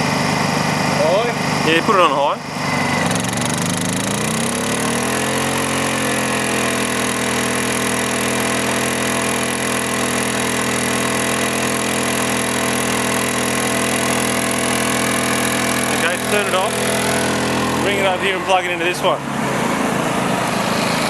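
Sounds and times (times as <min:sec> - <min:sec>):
generator engine running: 0:00.0 - 0:21.0.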